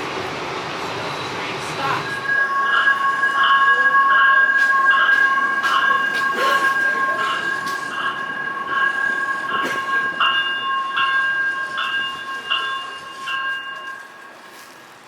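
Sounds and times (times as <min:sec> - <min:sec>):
warning bell ringing: 0:01.8 - 0:14.4.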